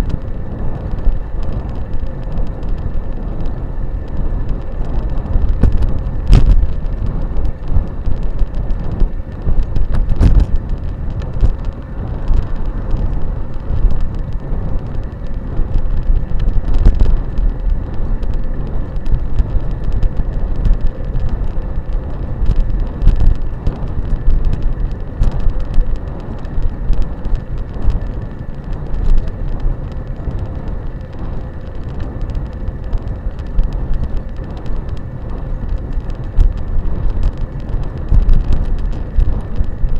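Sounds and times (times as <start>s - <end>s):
bike knocking and rattling: 0.0s - 39.9s
wind and ground rumble: 0.0s - 39.9s.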